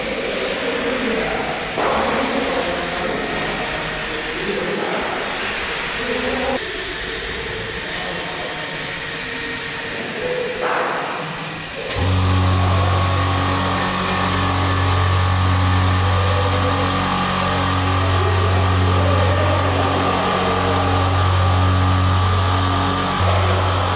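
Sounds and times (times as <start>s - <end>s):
laser cutter air hiss: 0.0s - 23.9s
low hum: 12.0s - 23.9s.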